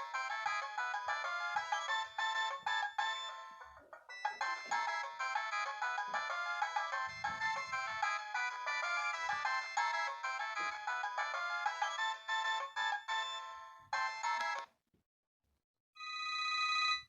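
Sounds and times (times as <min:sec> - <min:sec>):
electronic phone ringtone: 0:00.0 - 0:14.7, 0:16.0 - 0:17.0.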